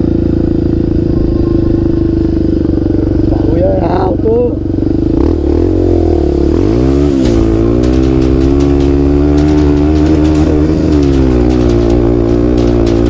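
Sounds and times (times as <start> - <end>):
motorcycle engine accelerating: 0.0 - 13.0
scattered ticks: 7.1 - 13.0.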